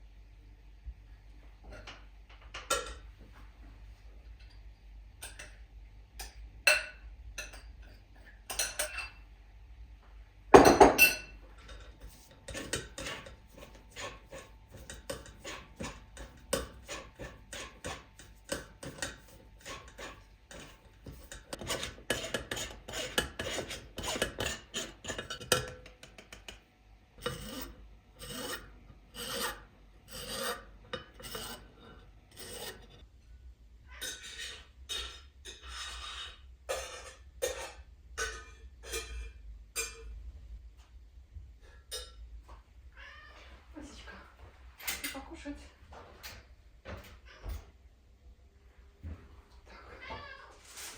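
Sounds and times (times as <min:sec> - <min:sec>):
grater rasping strokes: 0:12.2 - 0:25.4, 0:27.2 - 0:33.0.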